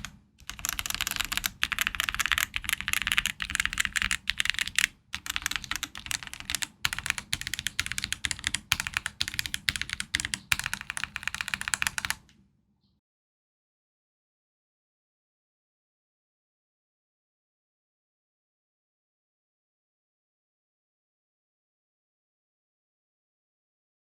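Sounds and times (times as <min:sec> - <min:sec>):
mechanical keyboard typing: 0:00.0 - 0:12.3.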